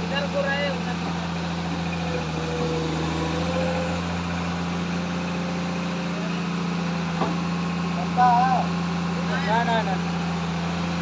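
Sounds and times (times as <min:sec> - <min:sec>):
excavator diesel engine running: 0:00.0 - 0:11.0.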